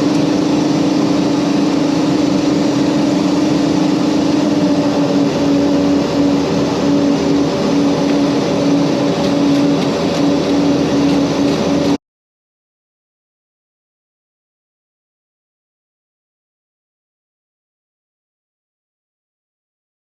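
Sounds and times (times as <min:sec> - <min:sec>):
turboprop engines droning: 0:00.0 - 0:12.0.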